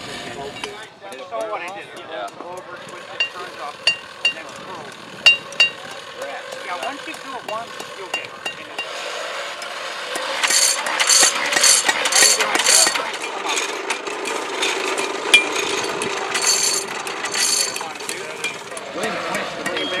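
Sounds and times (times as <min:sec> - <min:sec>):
metal scraping on hot steel: 0:08.0 - 0:19.5.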